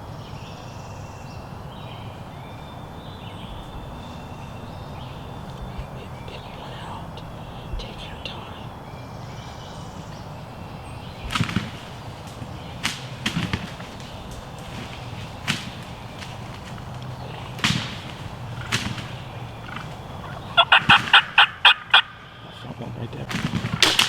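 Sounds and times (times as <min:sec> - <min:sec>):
sharp pops: 0:11.2 - 0:22.0, 0:23.2 - 0:24.0
turkey gobbling: 0:11.3 - 0:22.9.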